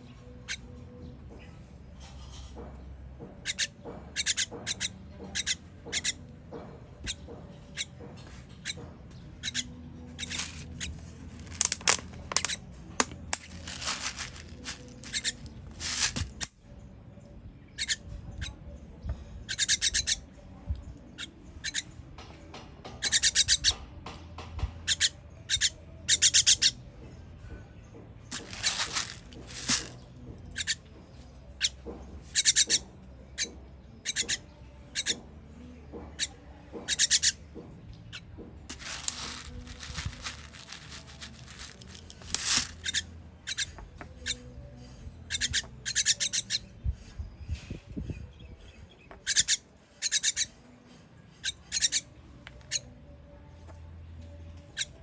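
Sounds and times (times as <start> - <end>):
baby birds chirping: 3.4 - 16.5, 17.8 - 18.6, 19.5 - 20.2, 22.9 - 23.8, 24.8 - 26.8, 28.3 - 30.8, 31.5 - 35.2, 36.1 - 37.4, 38.1 - 44.5, 45.2 - 46.8, 49.2 - 50.6, 51.4 - 52.0.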